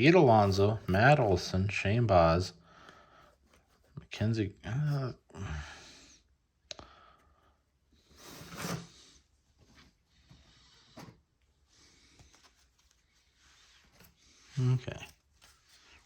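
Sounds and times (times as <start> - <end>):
cards rustling: 12.0 - 16.0.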